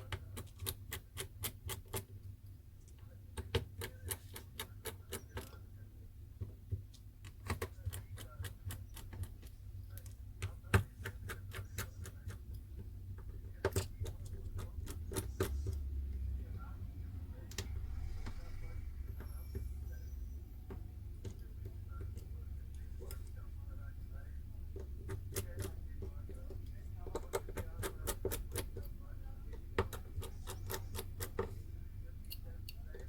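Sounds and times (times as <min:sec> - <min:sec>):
faint low hum: 0:00.0 - 0:33.0.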